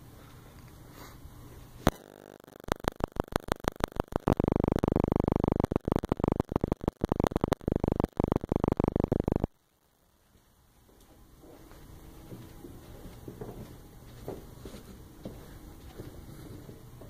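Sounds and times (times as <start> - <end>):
stuttering electronic buzz: 1.8 - 9.6.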